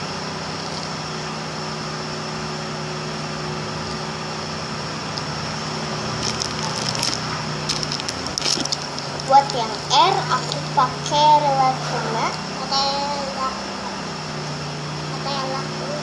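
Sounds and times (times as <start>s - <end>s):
steady background hum: 0.0s - 16.0s
crackling handling sounds: 0.6s - 1.0s, 6.1s - 10.8s.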